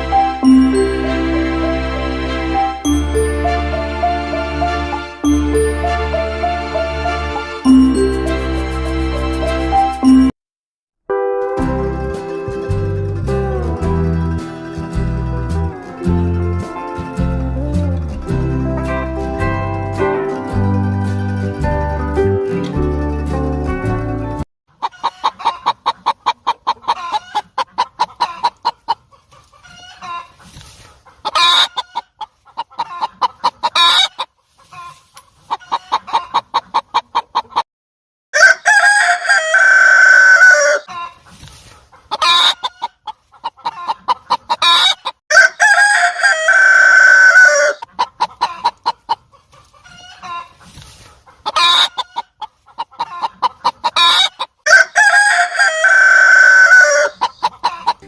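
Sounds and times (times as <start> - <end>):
chickens clucking: 24.7 - 37.6, 39.6 - 58.0
rooster crowing: 38.4 - 41.0, 44.7 - 47.8, 54.0 - 57.9.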